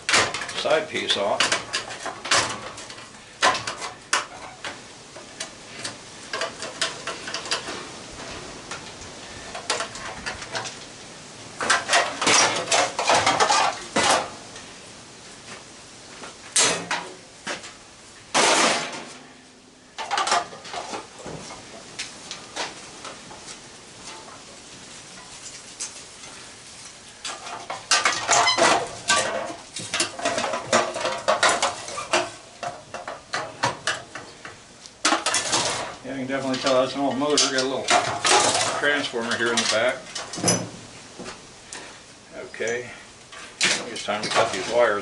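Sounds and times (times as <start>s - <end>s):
metal clatter: 11.6s - 14.4s, 18.3s - 19.3s, 27.2s - 34.3s, 35.0s - 40.7s
scraping metal rattle: 11.6s - 14.4s
sheet metal clinking and clanking: 11.6s - 14.4s, 16.5s - 17.2s, 27.3s - 34.3s.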